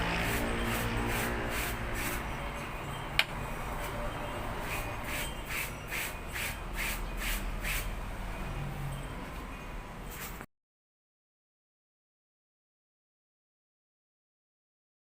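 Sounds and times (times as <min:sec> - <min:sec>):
rhythmic rasping strokes: 0:00.0 - 0:08.8.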